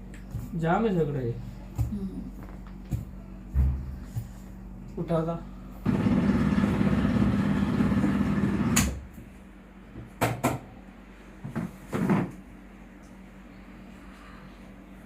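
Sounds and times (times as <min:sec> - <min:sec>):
rustling and shuffling: 0:00.0 - 0:04.9.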